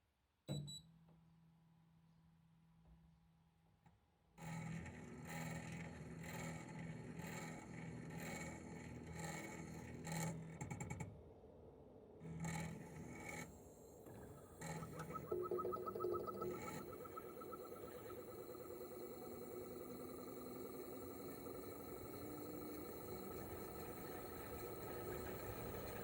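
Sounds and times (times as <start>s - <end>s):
high whine with fine ticking: 14.3s - 26.0s.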